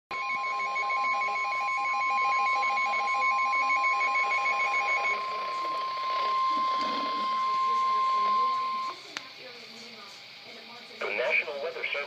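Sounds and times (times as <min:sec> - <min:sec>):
rapid beeping alarm: 0:00.1 - 0:09.0
steady alarm tone: 0:00.1 - 0:09.1.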